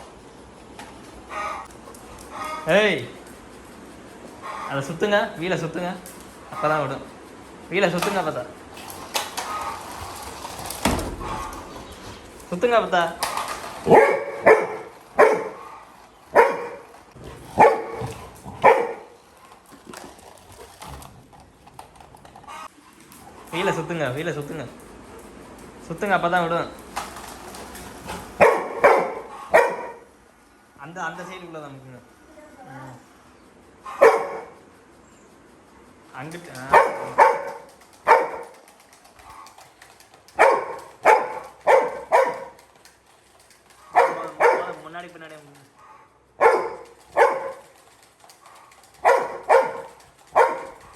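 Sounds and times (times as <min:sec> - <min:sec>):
puppy barking: 0:13.8 - 0:16.9, 0:17.5 - 0:19.2, 0:28.4 - 0:30.1, 0:33.8 - 0:34.6, 0:36.6 - 0:38.7, 0:40.3 - 0:42.7, 0:43.8 - 0:45.0, 0:45.8 - 0:47.8, 0:48.4 - 0:50.9.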